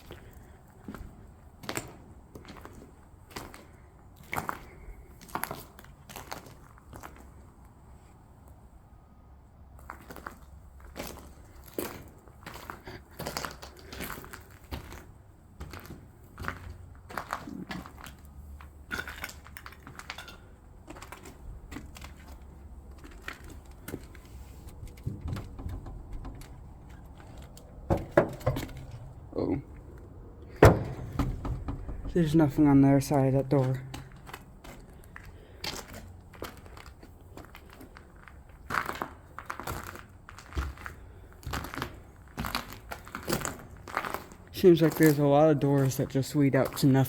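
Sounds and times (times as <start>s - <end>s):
footsteps crunching over debris: 9.8s - 47.0s.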